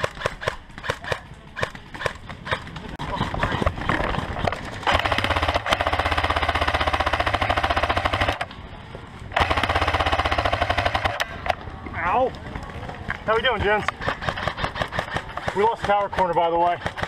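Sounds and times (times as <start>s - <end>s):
airsoft gun full-auto bursts: 0.0s - 2.6s, 4.8s - 8.5s, 9.3s - 11.4s, 14.0s - 17.0s.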